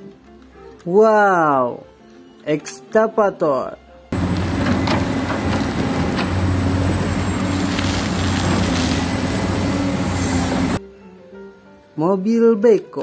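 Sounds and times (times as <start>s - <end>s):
diesel engine droning: 4.2s - 10.8s.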